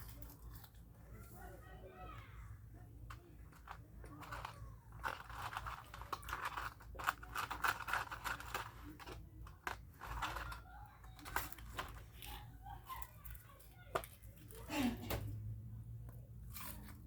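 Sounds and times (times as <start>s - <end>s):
chewing and crunching food: 0.0s - 1.4s, 3.2s - 14.6s.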